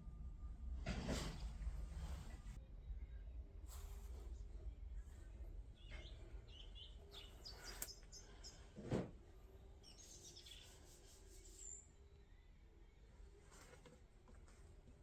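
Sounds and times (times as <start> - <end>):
low background rumble: 0.0 - 8.6
faint bird chirps: 5.7 - 8.7, 9.5 - 13.4.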